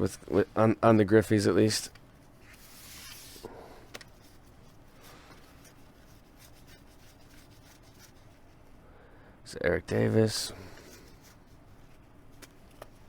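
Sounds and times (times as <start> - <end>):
cards sliding over one another: 2.4 - 4.4.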